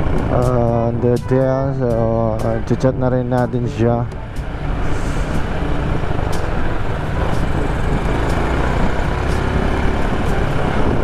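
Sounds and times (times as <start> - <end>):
low rumble of street traffic: 0.0 - 11.0.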